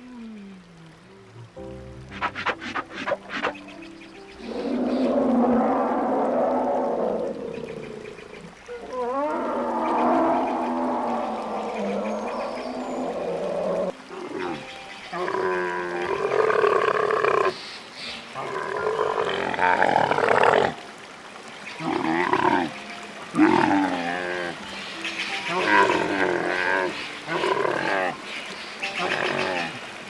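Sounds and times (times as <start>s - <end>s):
animal calling: 0.0s - 17.6s.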